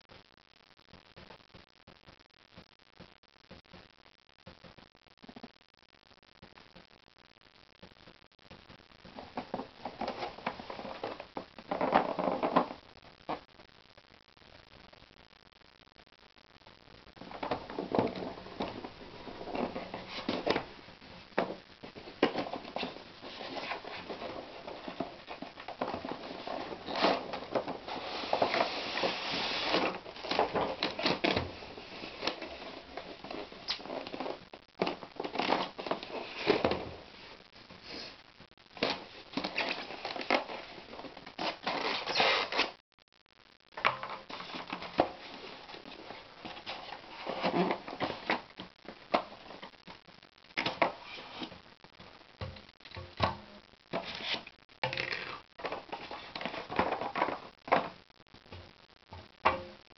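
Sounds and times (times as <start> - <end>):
packaging rustling and crinkling: 9.0 - 13.4, 17.2 - 37.3, 38.8 - 42.8, 43.8 - 49.9, 53.9 - 58.0.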